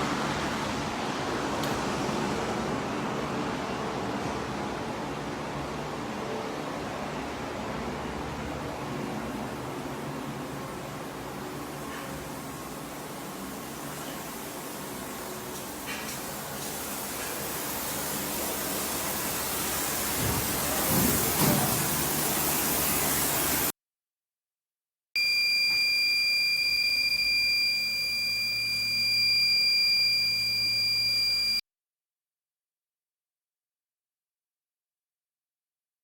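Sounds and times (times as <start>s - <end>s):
high-pitched two-tone electronic whine: 25.2s - 31.6s.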